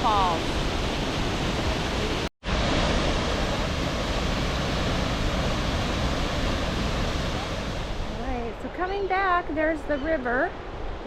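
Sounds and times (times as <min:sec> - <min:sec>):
waterfall rushing: 0:00.0 - 0:08.8.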